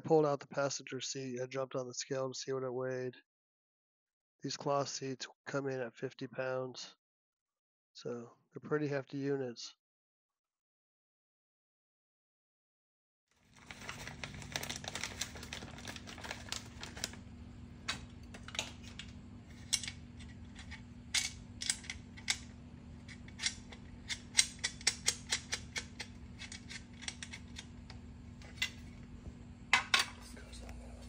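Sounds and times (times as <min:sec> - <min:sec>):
steady low hum: 0:13.6 - 0:31.0.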